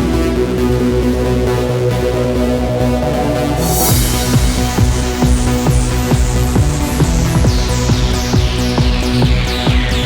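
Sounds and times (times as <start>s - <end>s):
synth chords: 0.0s - 10.0s
rising hiss: 3.6s - 7.8s
steady kick drum: 3.6s - 10.0s.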